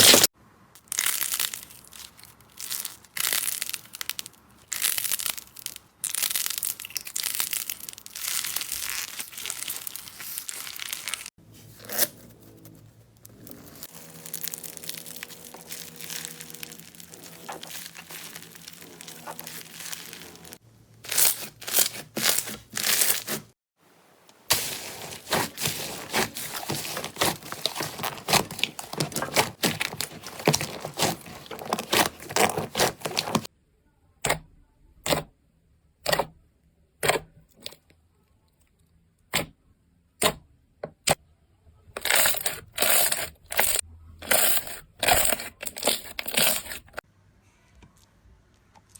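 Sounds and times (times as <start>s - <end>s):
slime crackling and popping: 0.0s - 11.3s, 14.0s - 23.4s, 24.5s - 33.5s.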